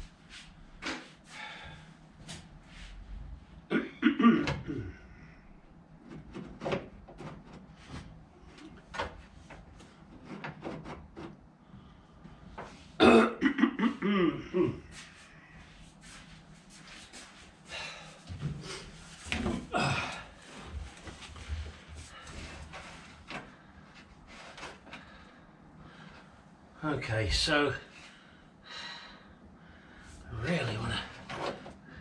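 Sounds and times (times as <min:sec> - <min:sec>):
man grunting: 0:13.0 - 0:14.9, 0:19.5 - 0:20.3.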